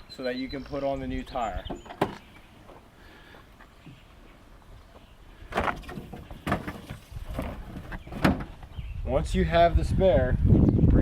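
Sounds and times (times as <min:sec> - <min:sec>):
knocks and scrapes at car: 0:05.6 - 0:08.6.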